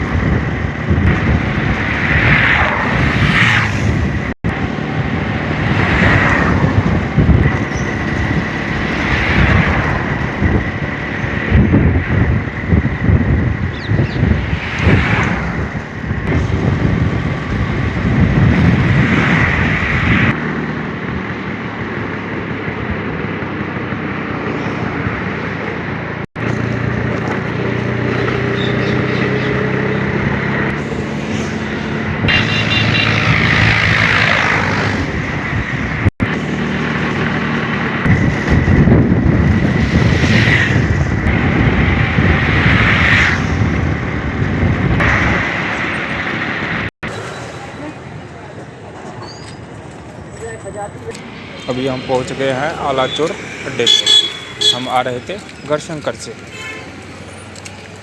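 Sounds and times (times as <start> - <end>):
wind on microphone: 0.0 - 20.4, 27.0 - 36.4, 37.6 - 47.2
vehicles passing on highway: 0.0 - 58.0.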